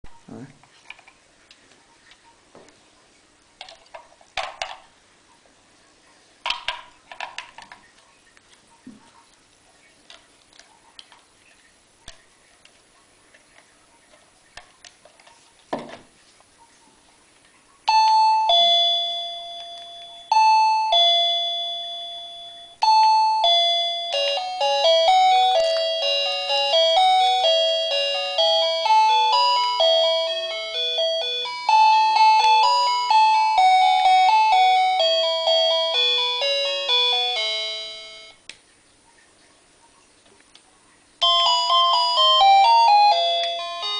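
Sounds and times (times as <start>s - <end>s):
electronic bell melody: 17.9s - 38.4s, 41.2s - 43.9s
two-note doorbell ding-dong: 17.9s - 38.4s, 41.2s - 43.9s.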